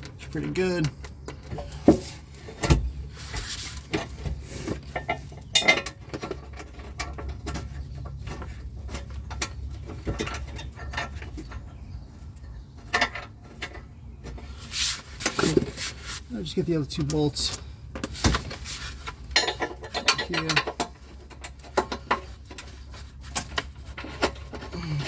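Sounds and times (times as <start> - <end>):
metal hitch hardware clinking: 0.0 - 3.0, 3.8 - 11.8, 16.4 - 25.0.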